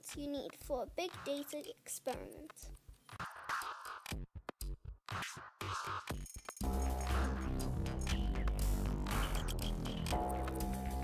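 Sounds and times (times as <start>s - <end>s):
electronic dubstep music: 6.6s - 11.0s.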